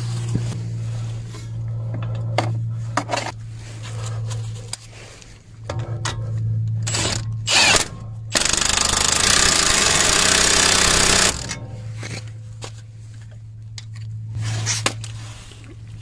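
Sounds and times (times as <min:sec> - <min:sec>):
impact wrench hammering: 0:06.9 - 0:11.9.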